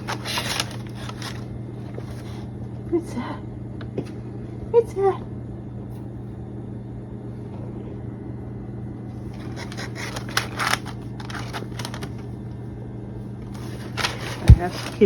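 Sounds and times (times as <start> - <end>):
packing paper rustling: 0.0 - 2.4, 9.2 - 12.4, 13.4 - 15.0
steady low hum: 0.0 - 15.0.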